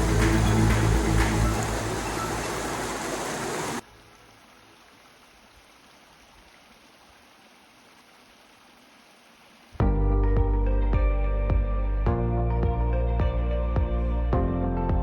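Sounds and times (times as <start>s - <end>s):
water rushing: 0.0s - 9.8s.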